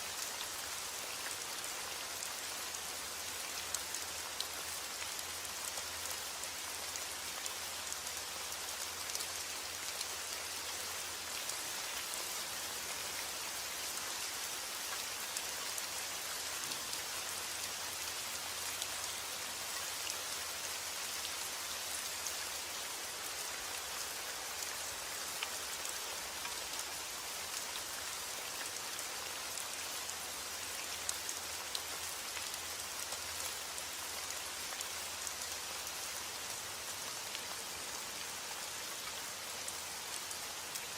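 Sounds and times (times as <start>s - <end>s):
steady rain hiss: 0.0s - 40.9s
raindrops ticking on a surface: 0.1s - 40.9s.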